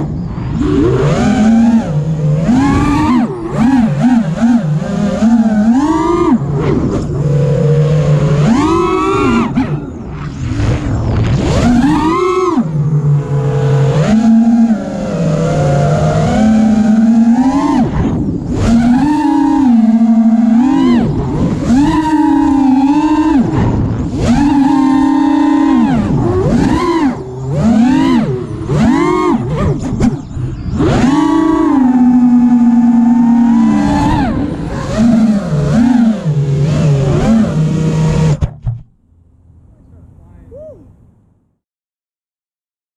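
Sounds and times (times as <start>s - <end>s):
quadcopter motors whining: 0.0s - 38.4s.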